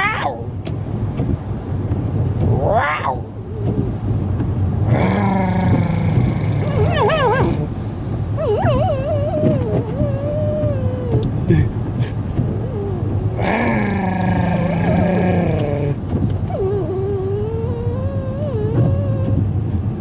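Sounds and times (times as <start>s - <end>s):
dog howling and whining: 0.0s - 0.5s, 2.5s - 4.0s, 4.9s - 7.7s, 8.4s - 11.4s, 12.4s - 19.5s
car rumble: 0.0s - 20.0s.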